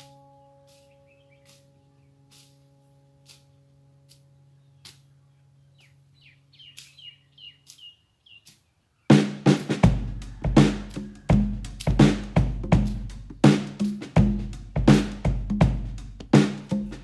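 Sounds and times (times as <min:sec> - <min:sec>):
bird chirping: 0:00.0 - 0:09.2
loud drum beat: 0:09.1 - 0:17.0.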